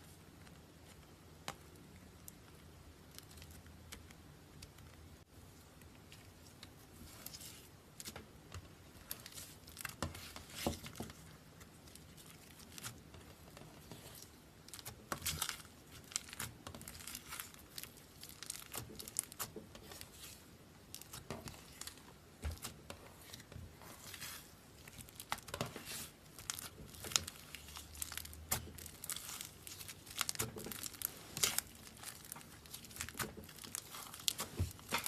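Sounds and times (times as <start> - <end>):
slime crackling and popping: 11.6 - 35.0.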